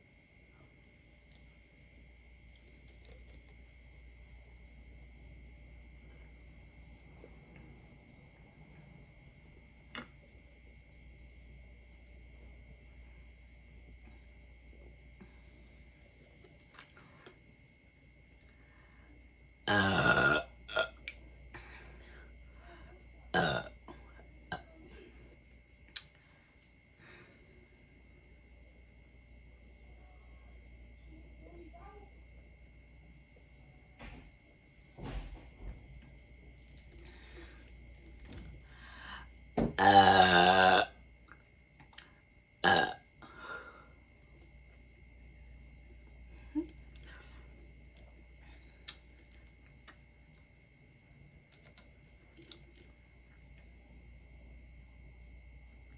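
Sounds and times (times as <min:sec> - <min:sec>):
woman burping: 0:19.7 - 0:21.0, 0:23.3 - 0:24.7, 0:39.8 - 0:40.9, 0:42.6 - 0:43.0.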